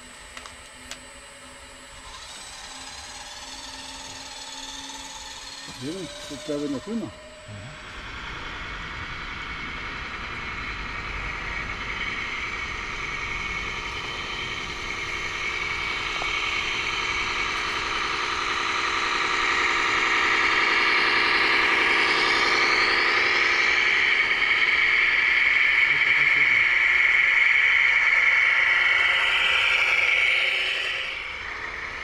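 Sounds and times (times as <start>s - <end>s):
motor whine: 0.0s - 32.0s.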